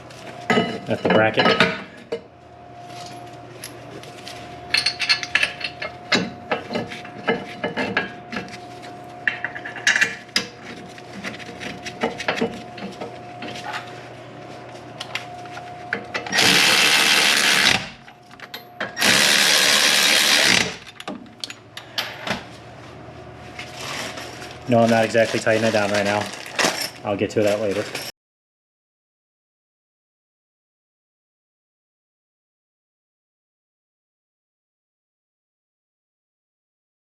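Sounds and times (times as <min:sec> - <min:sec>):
power tool spinning bolts: 0:16.2 - 0:18.0, 0:18.9 - 0:21.1.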